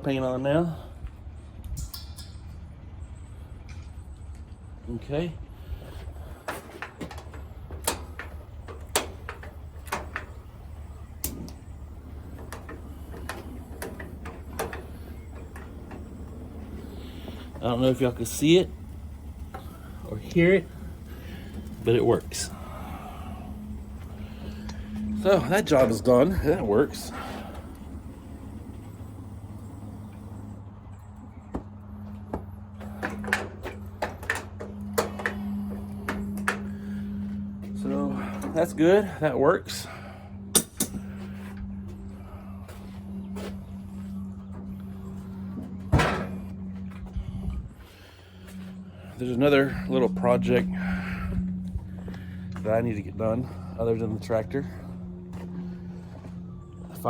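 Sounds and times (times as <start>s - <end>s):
steady low hum: 0.0s - 57.0s
low rumble: 1.1s - 39.2s
gas grill igniter clicks: 11.1s - 11.6s.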